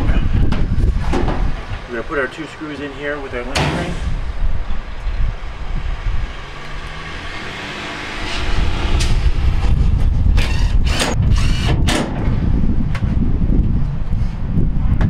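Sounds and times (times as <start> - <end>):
cordless drill driving screws: 10.4 - 11.8.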